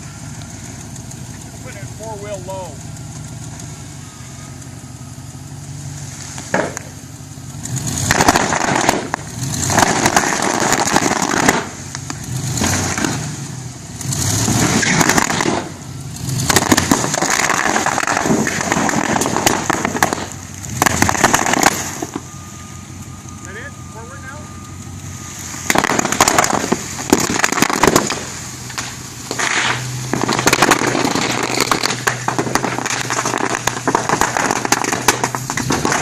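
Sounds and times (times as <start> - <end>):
truck engine idling: 0.0 - 36.0
bubble wrap popping: 28.8 - 36.0.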